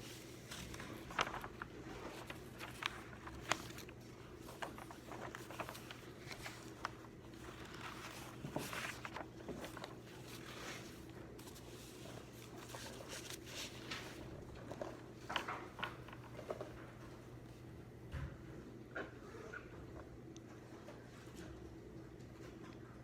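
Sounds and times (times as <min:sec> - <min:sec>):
pens and paper clicking and rustling: 0:00.0 - 0:17.1
low room hum: 0:00.0 - 0:23.0.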